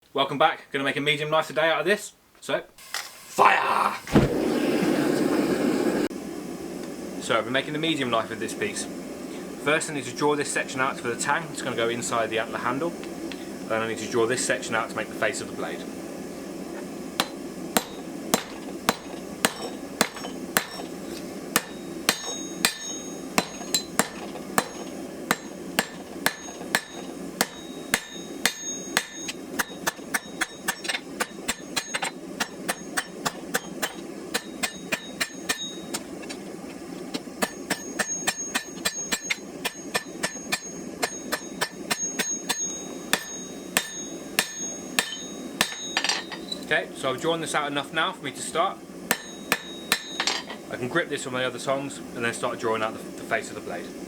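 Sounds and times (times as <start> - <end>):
steady hum: 2.9 - 54.0
hammer striking steel on anvil: 17.2 - 36.3, 37.4 - 46.7, 49.1 - 50.7.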